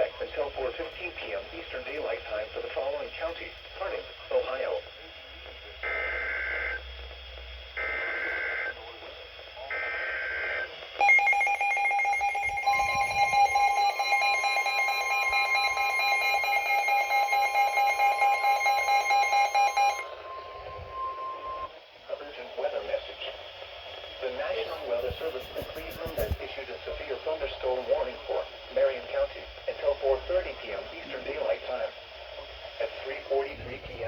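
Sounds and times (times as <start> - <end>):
pulsing buzzy beep: 11.0 - 21.7
steady warning tone: 11.0 - 23.0.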